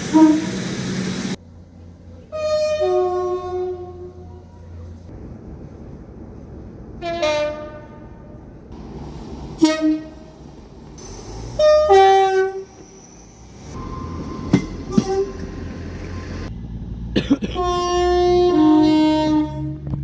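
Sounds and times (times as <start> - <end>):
train horn blasts: 0.0 - 0.7, 2.3 - 4.7, 7.0 - 8.5, 9.6 - 10.3, 11.6 - 12.7, 13.8 - 16.3, 17.6 - 20.0
train rumble: 0.0 - 20.0.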